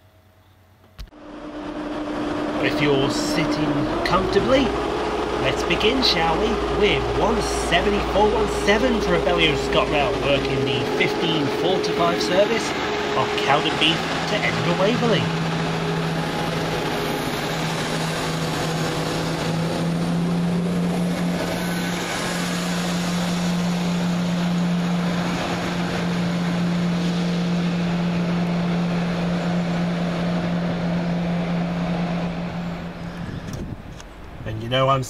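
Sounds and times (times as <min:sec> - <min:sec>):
train diesel engines droning: 0:00.0 - 0:35.0.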